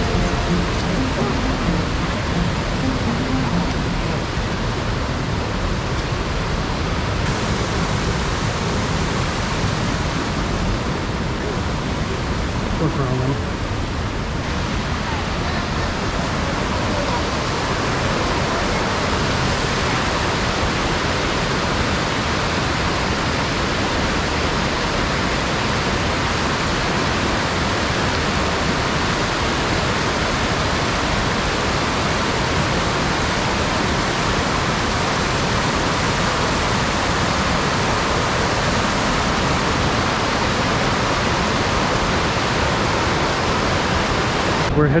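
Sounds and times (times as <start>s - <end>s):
waterfall rushing: 0.0s - 44.7s.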